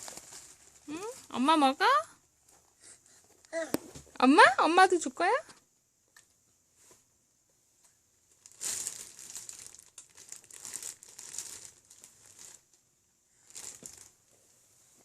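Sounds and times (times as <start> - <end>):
snack packaging crinkling: 0.0 - 0.9, 8.4 - 12.8, 13.4 - 14.2.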